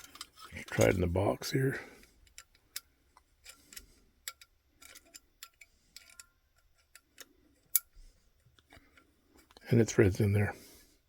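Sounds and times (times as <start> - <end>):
screw threading clicks: 2.2 - 8.0.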